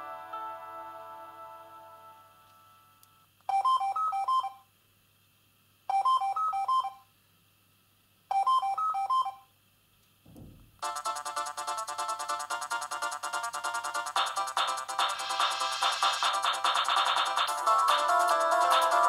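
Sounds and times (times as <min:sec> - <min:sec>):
low thump: 0:10.3 - 0:10.8.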